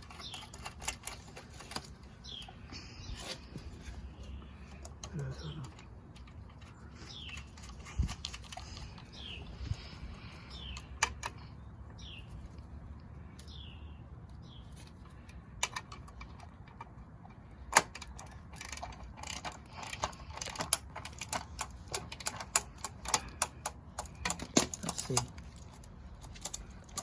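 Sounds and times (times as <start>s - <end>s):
metal parts and tools clicking: 0.0s - 11.5s, 14.8s - 27.0s
bird chirping: 0.0s - 15.3s.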